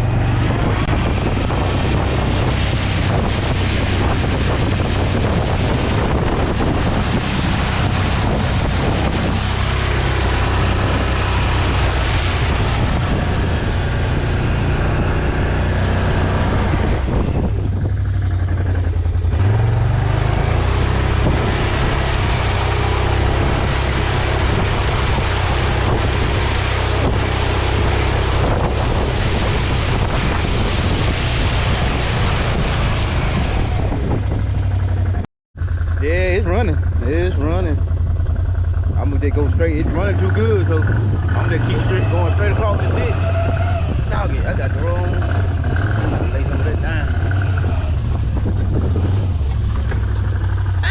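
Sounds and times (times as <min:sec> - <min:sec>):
atv engine running: 0:00.0 - 0:50.9
wind noise on microphone: 0:00.0 - 0:50.9.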